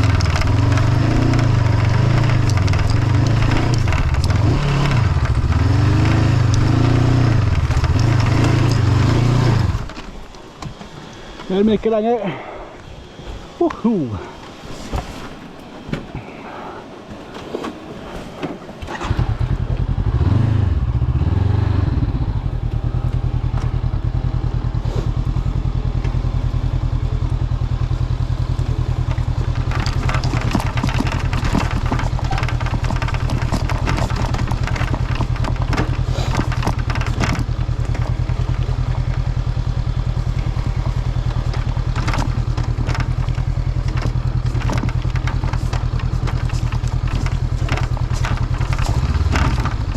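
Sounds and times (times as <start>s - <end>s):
motorcycle engine revving: 0.0s - 10.1s, 18.9s - 49.9s
windshield rattling: 0.0s - 11.8s, 27.8s - 49.9s
low rumble of wind: 0.0s - 49.9s.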